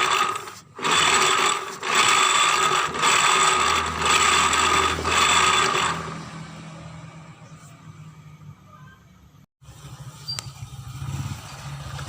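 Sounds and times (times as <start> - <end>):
scooter grinding rasp: 0.0 - 6.3.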